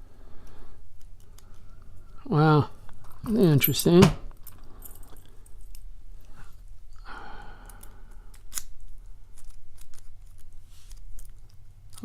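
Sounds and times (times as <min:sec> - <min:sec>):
key scraping in lock: 0:03.2 - 0:05.8, 0:08.3 - 0:12.0.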